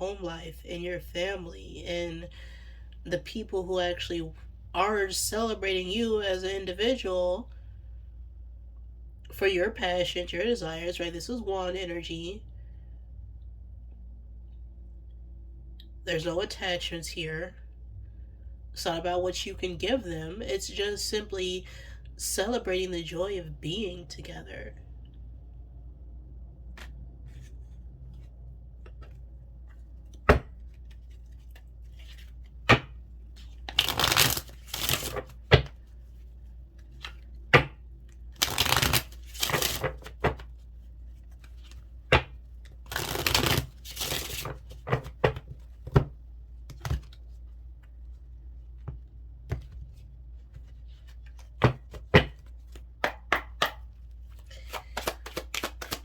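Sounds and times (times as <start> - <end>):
cards rustling while shuffled: 26.7 - 56.0
cards clicking and tapping: 28.8 - 35.8, 38.4 - 40.5, 41.6 - 46.1, 51.2 - 56.0.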